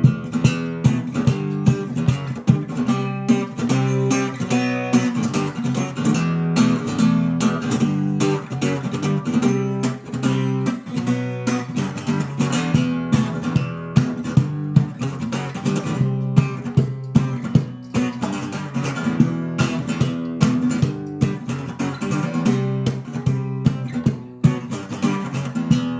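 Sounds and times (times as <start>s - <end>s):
percussive knocks on guitar body: 0.0s - 2.7s, 12.7s - 18.3s
fingerstyle acoustic guitar: 0.0s - 25.9s.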